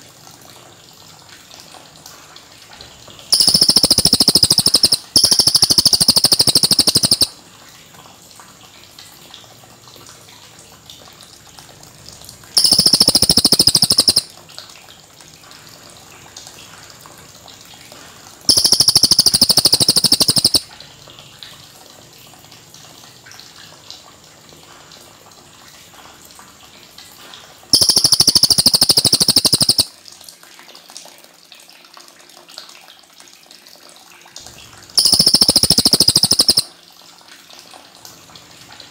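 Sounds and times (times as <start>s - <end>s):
songbird singing rolling trills: 12.6s - 14.3s.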